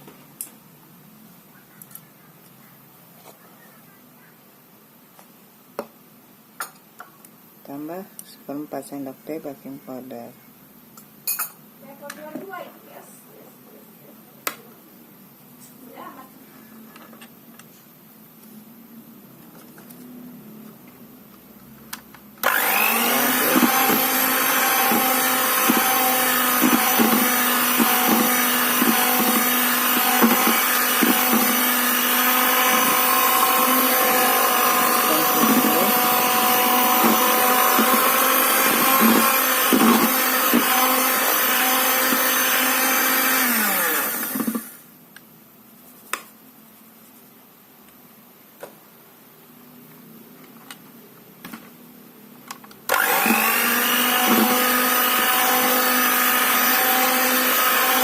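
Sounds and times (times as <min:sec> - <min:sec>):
electric mixer beating batter: 0:22.4 - 0:44.8, 0:52.9 - 0:58.0.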